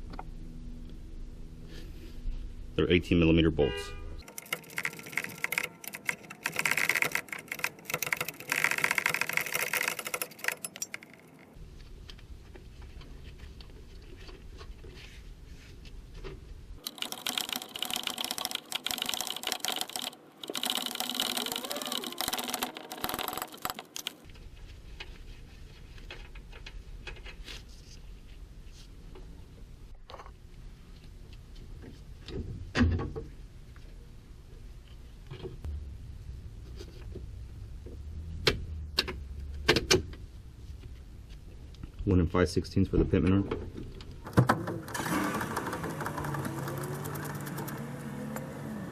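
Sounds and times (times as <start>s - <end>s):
low steady hum: 0.0s - 6.4s, 27.7s - 44.3s
wrench rattling: 4.2s - 11.6s, 16.8s - 24.3s.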